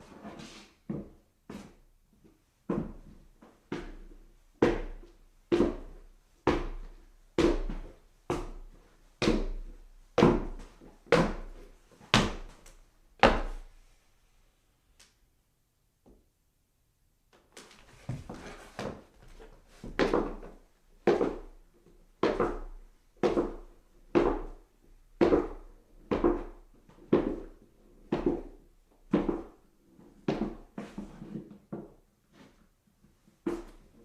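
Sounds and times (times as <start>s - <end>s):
heavy footsteps on stairs: 3.7s - 12.6s, 17.8s - 21.6s.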